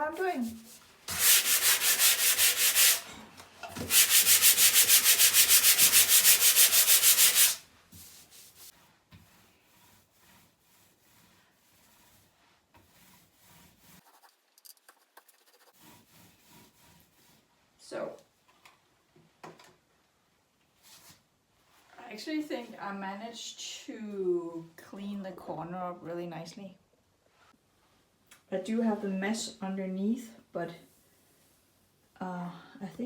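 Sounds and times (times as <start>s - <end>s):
sandpaper scrubbing on wall: 0.2s - 3.1s, 3.8s - 14.4s, 15.1s - 17.5s.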